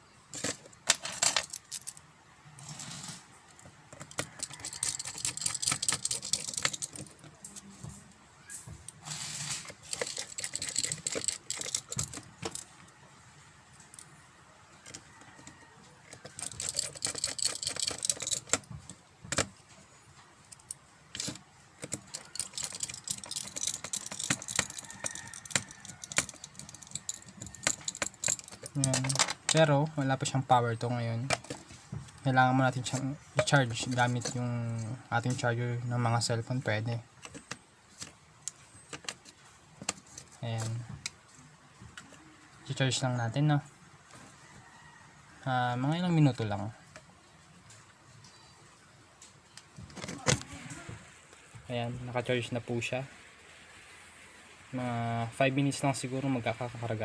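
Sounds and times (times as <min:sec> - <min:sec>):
flashlight clicks and rattles: 0:04.0 - 0:07.2, 0:09.6 - 0:12.7, 0:16.1 - 0:19.5, 0:20.5 - 0:29.6.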